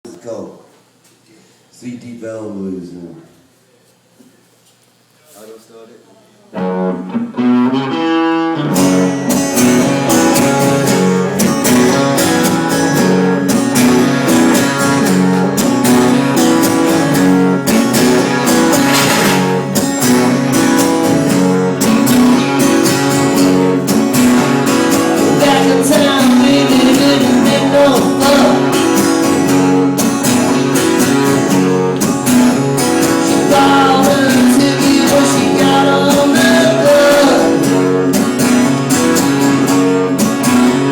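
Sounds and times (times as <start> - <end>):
blues guitar playing: 6.5 - 40.9.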